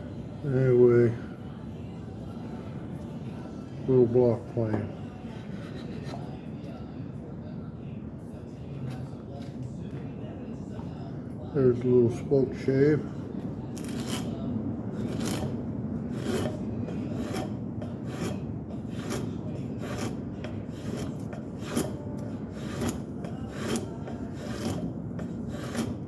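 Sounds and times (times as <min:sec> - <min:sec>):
spokeshave shaving wood: 0:13.8 - 0:14.4, 0:15.0 - 0:26.0.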